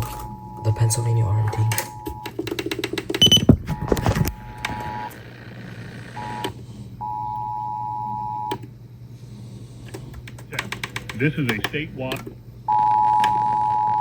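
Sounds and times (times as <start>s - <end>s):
two-tone alert signal: 0.0s - 2.3s, 3.2s - 5.1s
static noise and clicks: 1.5s - 6.6s, 9.9s - 14.0s.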